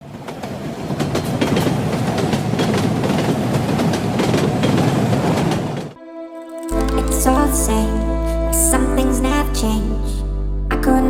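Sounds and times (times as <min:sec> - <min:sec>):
wheels clicking over rail joints: 0:06.4 - 0:08.8.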